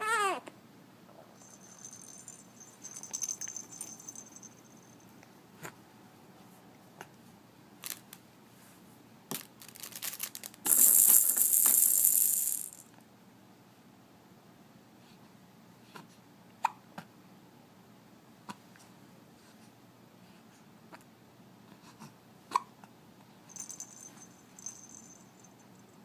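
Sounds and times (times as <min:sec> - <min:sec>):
baby rattle toys jingling: 0:01.4 - 0:05.0, 0:09.6 - 0:12.8, 0:23.5 - 0:25.8.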